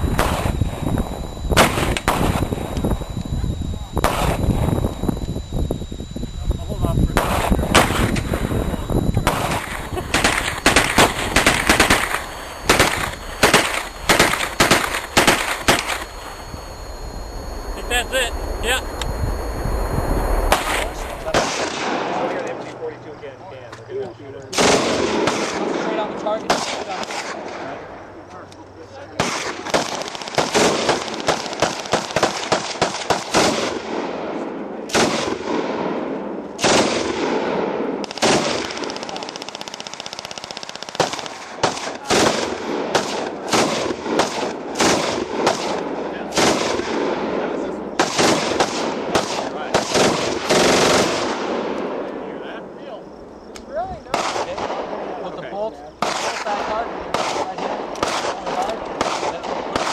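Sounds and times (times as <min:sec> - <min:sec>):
single gunshots: 0:00.2 - 0:00.6, 0:01.6 - 0:02.6, 0:04.0 - 0:04.5, 0:07.2 - 0:08.4, 0:09.2 - 0:16.1, 0:20.5 - 0:22.4, 0:24.5 - 0:27.8, 0:29.2 - 0:34.1, 0:34.9 - 0:36.0, 0:36.6 - 0:40.2, 0:40.9 - 0:51.9, 0:54.1 - 0:55.0, 0:56.0 - 0:59.9
automatic gunfire bursts: 0:01.6 - 0:02.6, 0:04.0 - 0:04.5, 0:07.2 - 0:08.4, 0:09.2 - 0:16.3, 0:24.6 - 0:27.4, 0:29.2 - 0:33.9, 0:34.9 - 0:35.6, 0:36.6 - 0:37.3, 0:38.0 - 0:47.0, 0:48.0 - 0:51.4, 0:56.0 - 0:59.9.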